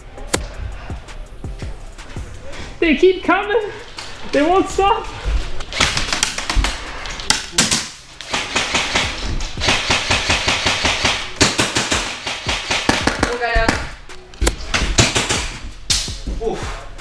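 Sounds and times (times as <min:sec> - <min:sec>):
airsoft rifle rapid shots: 0:05.7 - 0:14.0, 0:15.0 - 0:16.2.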